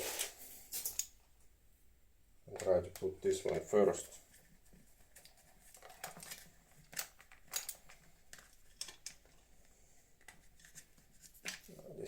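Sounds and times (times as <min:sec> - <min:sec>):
clicks of parts handled: 0:00.2 - 0:01.2, 0:05.9 - 0:09.4.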